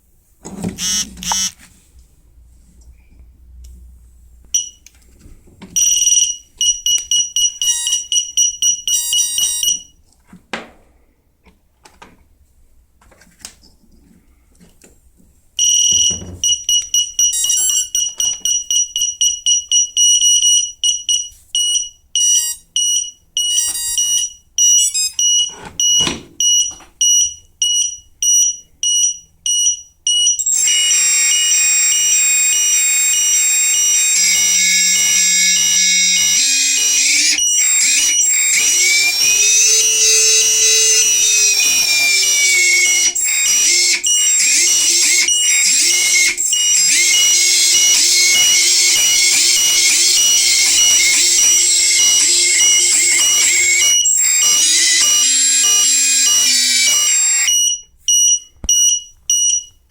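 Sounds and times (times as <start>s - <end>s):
motor calibration beeps: 0.8s - 1.6s, 15.6s - 59.8s.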